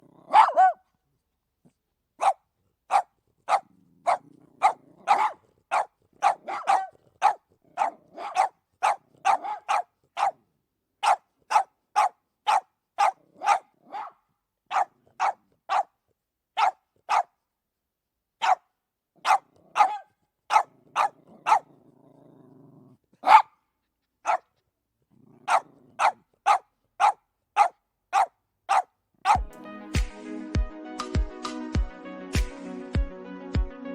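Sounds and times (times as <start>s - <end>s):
dog growling: 0.0s - 0.8s, 3.6s - 5.5s, 20.7s - 23.0s, 25.1s - 26.2s
small dogs barking: 0.0s - 0.9s, 2.2s - 10.4s, 11.0s - 16.0s, 16.6s - 17.3s, 18.4s - 18.6s, 19.2s - 21.8s, 23.2s - 23.6s, 24.2s - 24.6s, 25.3s - 29.6s.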